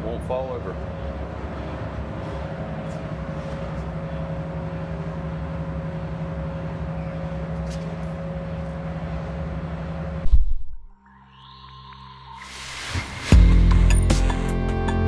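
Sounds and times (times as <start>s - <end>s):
mechanical hum: 0.0s - 14.4s
rushing noise: 12.4s - 14.3s.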